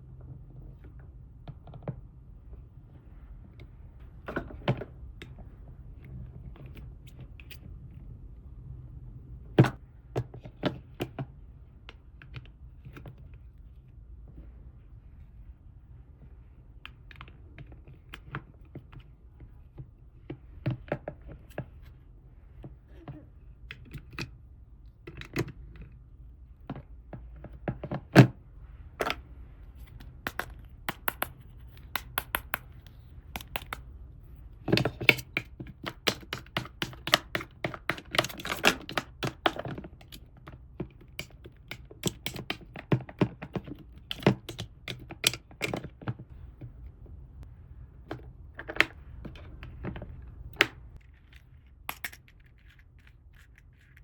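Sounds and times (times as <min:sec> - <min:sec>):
plastic toy pieces clicking: 0:51.9 - 0:54.0.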